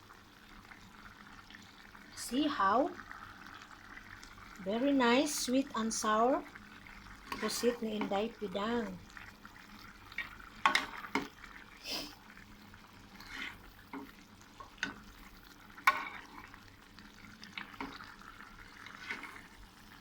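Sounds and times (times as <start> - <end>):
frying hiss: 0.0 - 20.0
utensil scraping pan: 7.3 - 8.2, 13.1 - 15.0, 15.8 - 16.5, 18.7 - 19.6.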